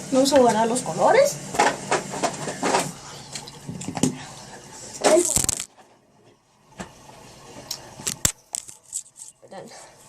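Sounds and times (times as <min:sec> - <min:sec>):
small items clicking and knocking: 0:05.1 - 0:05.7.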